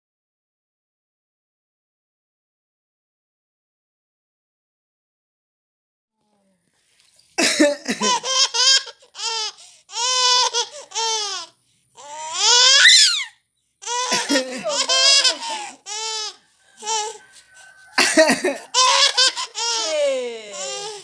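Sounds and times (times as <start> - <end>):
person coughing: 7.4 - 8.1, 14.1 - 15.8
baby laughing: 7.4 - 21.0.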